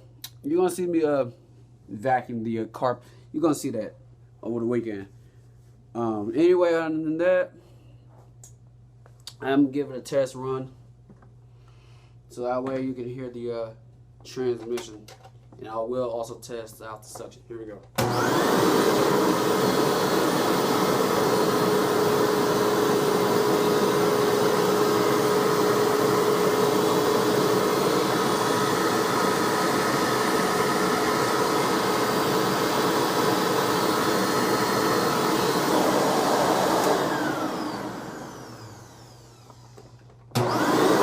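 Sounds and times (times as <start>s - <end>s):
vacuum cleaner motor humming: 18.0s - 41.0s.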